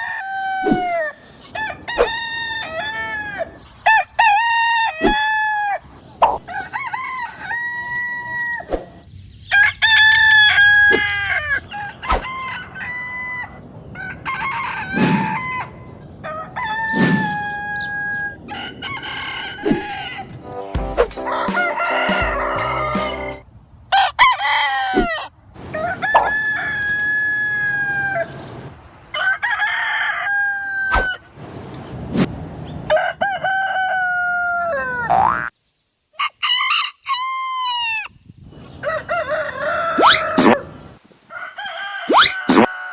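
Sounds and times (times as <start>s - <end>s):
roosters crowing: 0.0s - 31.4s, 32.6s - 35.5s, 36.2s - 42.9s.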